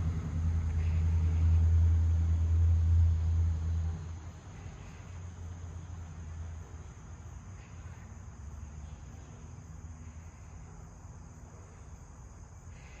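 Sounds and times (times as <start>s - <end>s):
crickets chirring: 0.0s - 13.0s
low background rumble: 0.0s - 13.0s.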